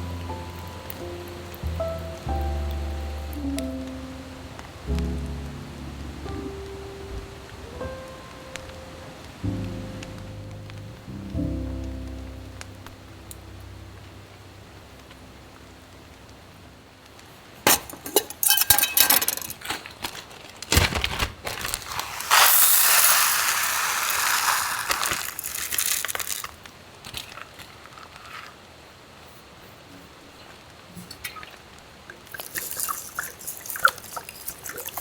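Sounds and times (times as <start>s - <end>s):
hard objects clinking and knocking: 17.7s - 19.6s, 21.8s - 26.6s, 32.4s - 35.0s
hiss: 21.8s - 26.5s.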